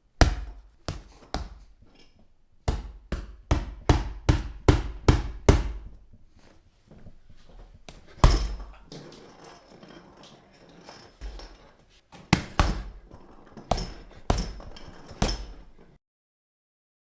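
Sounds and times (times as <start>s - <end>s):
fists punching heavy bag: 0.2s - 1.8s, 2.7s - 6.0s, 7.4s - 8.9s, 12.2s - 15.9s.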